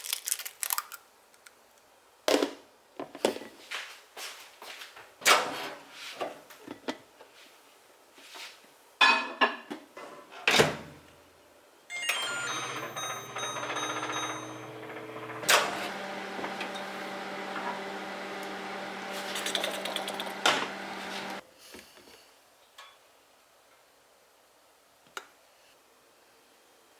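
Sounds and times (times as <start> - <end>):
microwave oven humming: 11.9 - 21.4.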